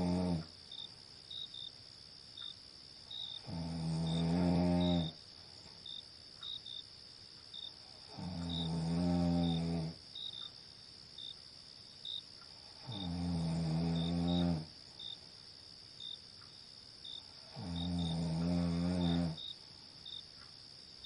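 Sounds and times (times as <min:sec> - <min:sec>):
person snoring: 0:00.0 - 0:00.5, 0:03.4 - 0:05.2, 0:08.1 - 0:10.0, 0:12.8 - 0:14.7, 0:17.4 - 0:19.4
cricket chirps: 0:00.0 - 0:21.0
high insect hum: 0:00.0 - 0:21.0.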